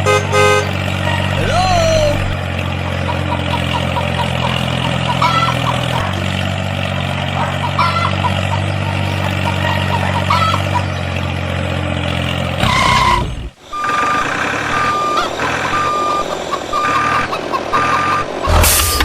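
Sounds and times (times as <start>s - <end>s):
truck engine idling: 0.0s - 19.0s
reversing alarm beeping: 13.6s - 19.0s.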